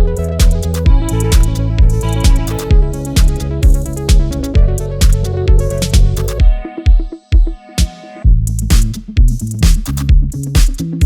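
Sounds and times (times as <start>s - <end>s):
sustained synth chords: 0.0s - 8.4s
electronic background music: 0.0s - 11.0s
steady kick drum beat: 0.0s - 11.0s.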